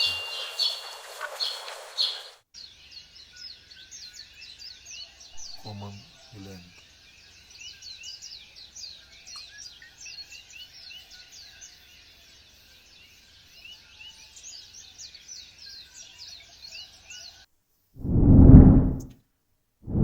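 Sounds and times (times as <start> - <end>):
birds chirping: 5.4 - 6.7.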